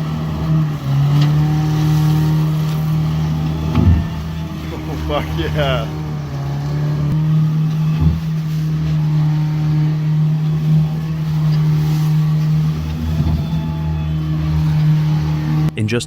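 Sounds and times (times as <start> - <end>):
boat engine droning: 0.0 - 16.0.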